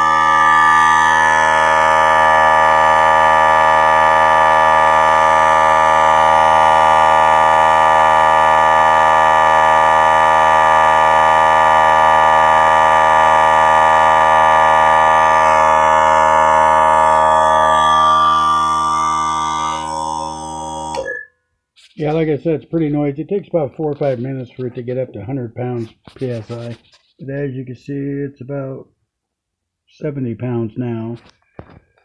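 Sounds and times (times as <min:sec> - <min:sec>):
electric air compressor running: 0:00.0 - 0:21.1.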